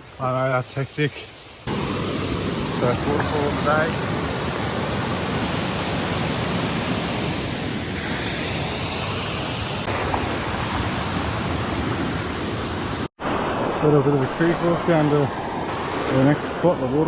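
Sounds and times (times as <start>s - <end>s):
waterfall pouring: 1.7s - 13.1s.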